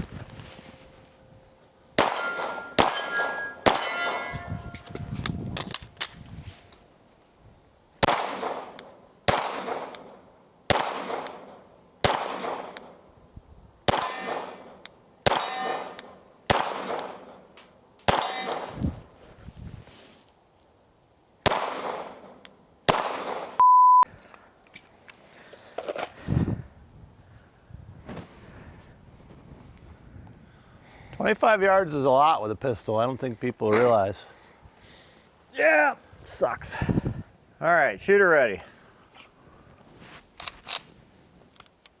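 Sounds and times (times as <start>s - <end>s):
pistol shots: 2.0s - 4.8s, 8.0s - 13.0s, 13.9s - 17.4s, 18.1s - 18.8s, 21.4s - 22.3s, 22.9s - 23.6s
steel plates ringing: 2.0s - 5.0s, 14.0s - 14.6s, 15.4s - 16.0s, 18.2s - 18.7s.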